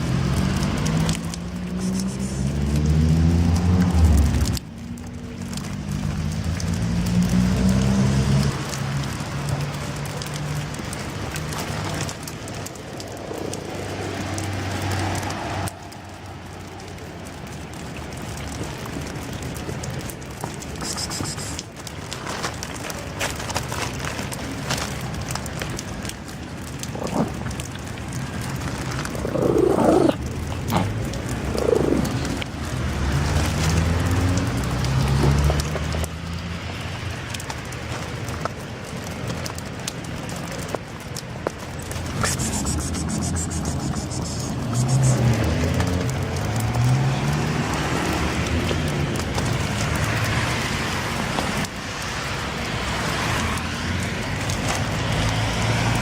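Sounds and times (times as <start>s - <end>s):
road traffic noise: 0.0s - 56.0s
vehicle engine humming: 25.4s - 36.6s, 40.4s - 51.7s
animal calling: 29.1s - 32.5s, 42.1s - 45.3s.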